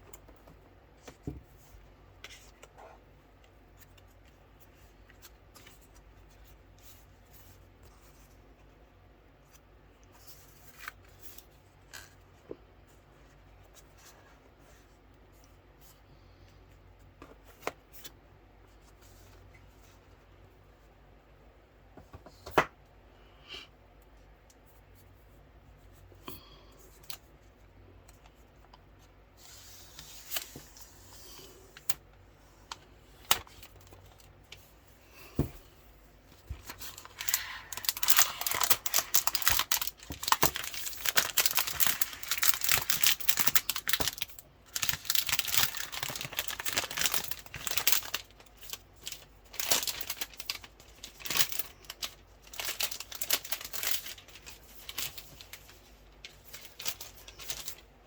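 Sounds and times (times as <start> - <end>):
wrapping crinkling and tearing: 36.6 - 57.9.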